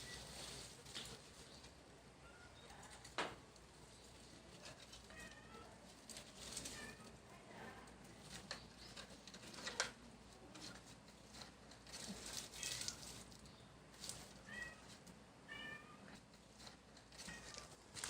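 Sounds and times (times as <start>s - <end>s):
young cat meowing: 14.4s - 14.9s, 15.5s - 16.2s.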